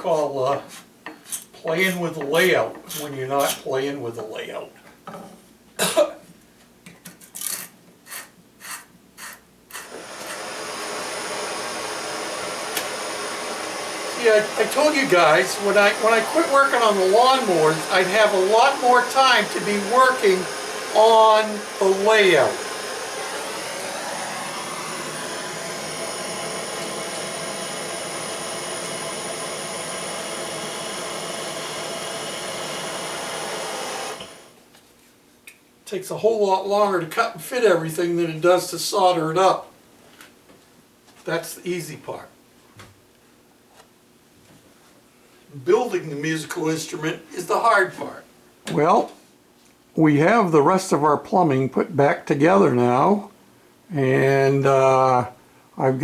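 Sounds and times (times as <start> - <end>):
rasping strokes: 1.2 - 3.7, 7.4 - 10.4
blowtorch flame hissing: 8.1 - 34.6
blowtorch lighting with a pop: 12.4 - 14.1.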